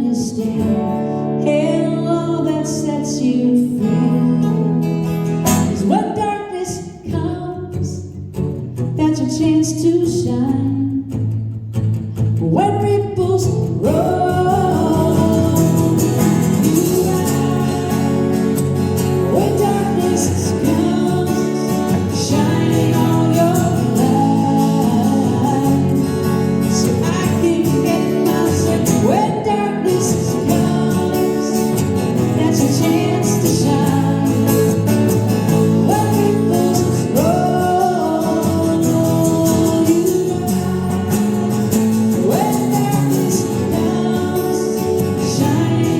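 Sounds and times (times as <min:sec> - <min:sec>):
acoustic instrumental accompaniment: 0:00.0 - 0:45.9
people singing: 0:13.4 - 0:45.9.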